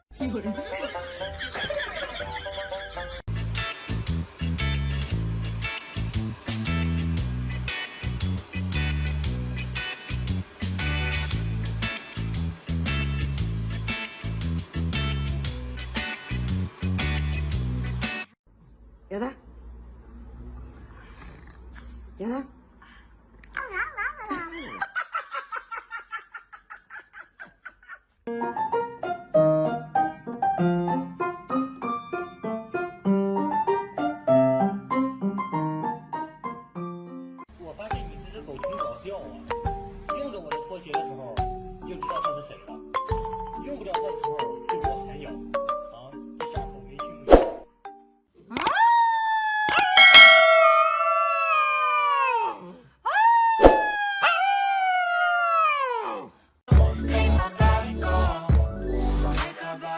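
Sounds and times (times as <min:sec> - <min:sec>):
piano music: 0:28.3 - 0:37.4, 0:50.0 - 0:51.5
dog howling: 0:51.2 - 0:56.3.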